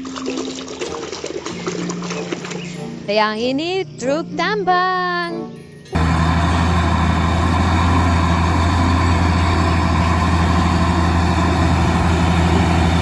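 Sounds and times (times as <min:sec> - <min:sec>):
heavy truck engine idling: 0:06.0 - 0:13.0.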